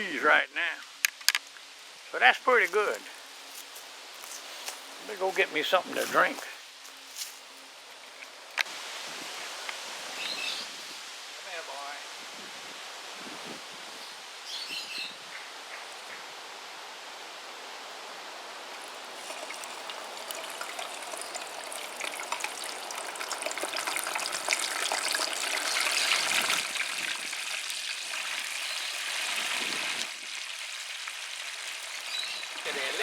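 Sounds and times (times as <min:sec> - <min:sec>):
oil sizzling and crackling: 0:17.9 - 0:33.0.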